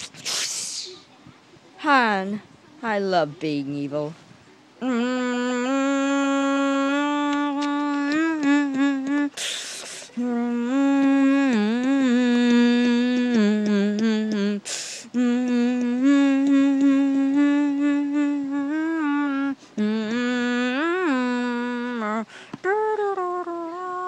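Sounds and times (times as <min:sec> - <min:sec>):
person humming a slow tune: 0:04.8 - 0:24.0.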